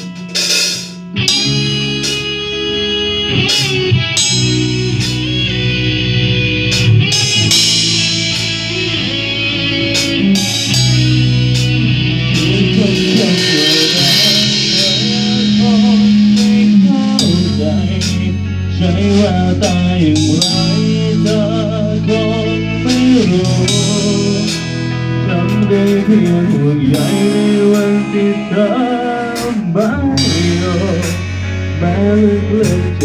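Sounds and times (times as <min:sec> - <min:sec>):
guitar-led band instrumental: 0:00.0 - 0:33.0
held bass notes: 0:00.0 - 0:33.0
drum hits: 0:10.0 - 0:18.3.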